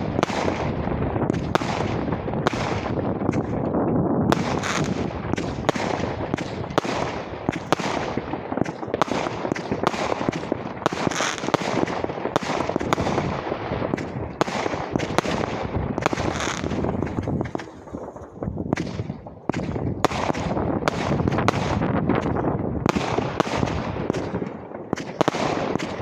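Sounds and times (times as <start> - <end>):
distant fireworks crackling: 0.0 - 26.0
sharp firework bangs: 0.0 - 26.0.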